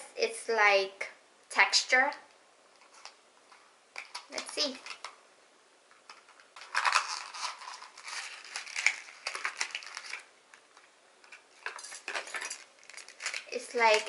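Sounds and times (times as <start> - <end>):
packaging crackling and rustling: 2.8 - 5.2, 6.0 - 14.0.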